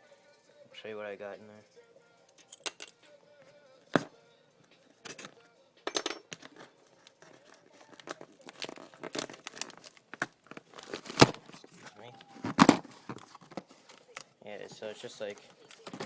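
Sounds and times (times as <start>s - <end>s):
plastic markers clattering: 2.3s - 3.0s, 5.1s - 16.0s
packaging crinkling: 6.4s - 14.3s, 14.9s - 16.0s.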